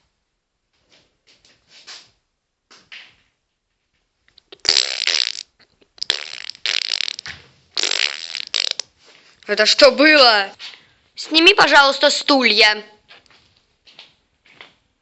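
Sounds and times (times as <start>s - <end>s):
rasping fart-like squeak: 4.5s - 8.8s.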